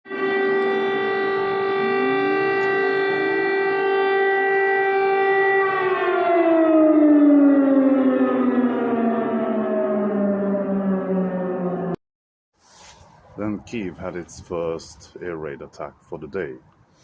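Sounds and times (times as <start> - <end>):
air raid siren: 0.0 - 12.0
fainter second siren rising: 0.1 - 12.0.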